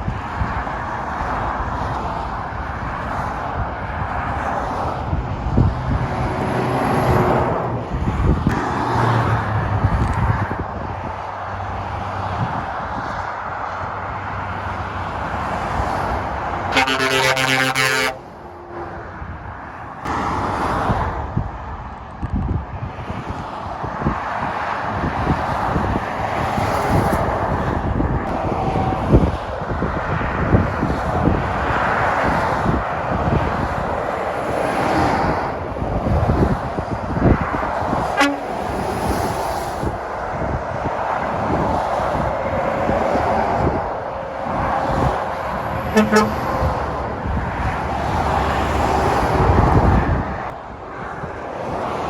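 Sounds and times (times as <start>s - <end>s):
wind buffeting microphone: 0.0s - 16.6s, 18.8s - 52.0s
motorway traffic passing: 0.0s - 52.0s
tyre noise on road: 0.0s - 52.0s
heavy engine drone: 16.5s - 19.2s, 38.2s - 38.8s, 45.6s - 47.2s.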